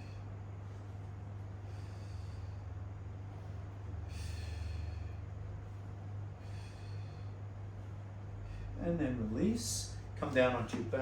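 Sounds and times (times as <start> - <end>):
person breathing with effort: 0.0 - 8.8
steady low hum: 0.0 - 11.0.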